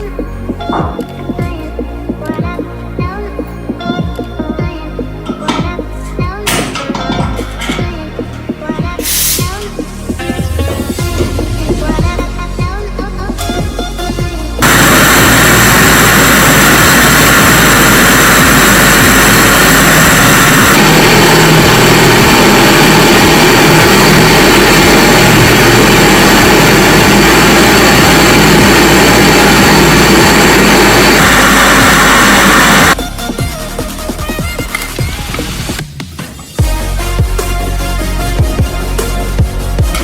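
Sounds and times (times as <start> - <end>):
power tool whirring: 14.6 - 33.0.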